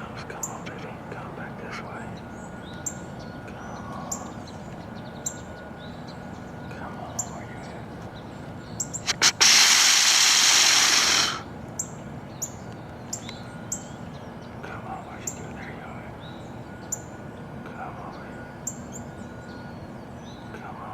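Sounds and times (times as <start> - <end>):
faint bird chirps: 0.0 - 20.9
deer call snorts and wheeze: 9.0 - 11.5.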